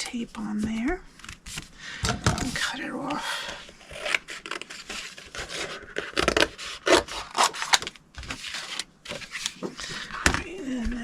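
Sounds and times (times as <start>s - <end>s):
hands rubbing and scraping paper: 2.4s - 11.0s.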